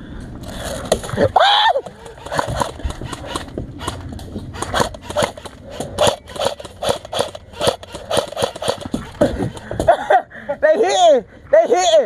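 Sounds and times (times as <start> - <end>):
airsoft guns firing: 2.1 - 9.6.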